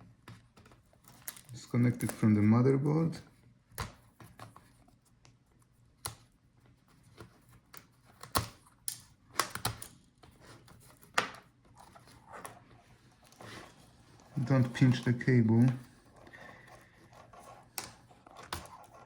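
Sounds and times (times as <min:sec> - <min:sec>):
plastic laptop parts clicking: 0:00.2 - 0:02.2, 0:07.0 - 0:12.6, 0:14.2 - 0:19.0.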